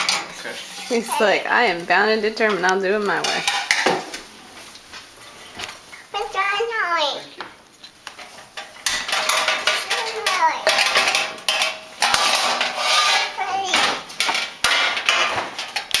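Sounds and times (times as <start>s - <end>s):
dishes and cutlery clattering: 0.0s - 4.2s, 8.2s - 16.0s.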